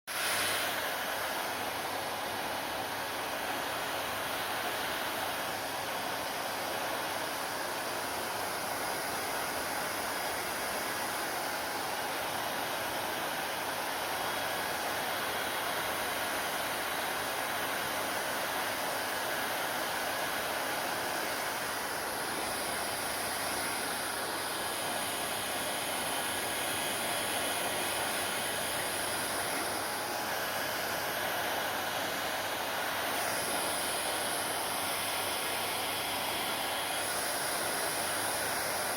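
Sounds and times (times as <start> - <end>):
hair dryer running: 0.1 - 38.9.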